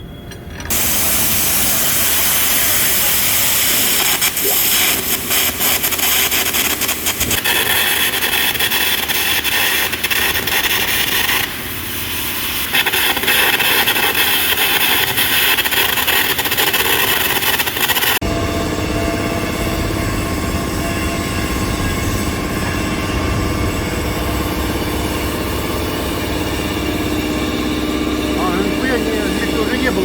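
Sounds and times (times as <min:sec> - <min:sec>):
power tool hissing and crackling on steel: 0:00.7 - 0:18.2
low steady machine noise: 0:18.2 - 0:30.0.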